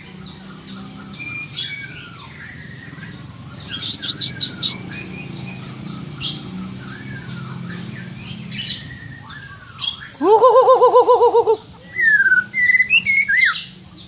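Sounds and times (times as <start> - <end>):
bird chirping and whistling: 0.9 - 13.8.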